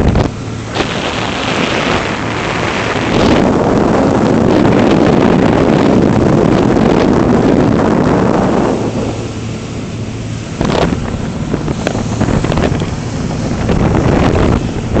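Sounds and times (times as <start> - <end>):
boat motor running: 0.0 - 15.0
water rushing past hull: 0.0 - 15.0
wind buffeting microphone: 0.0 - 15.0
water slaps: 8.8 - 15.0.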